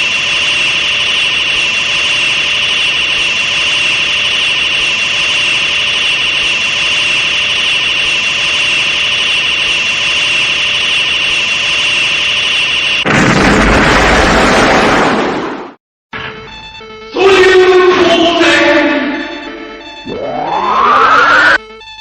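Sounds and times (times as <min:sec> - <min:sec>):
explosion-like burst: 0:13.0 - 0:15.8.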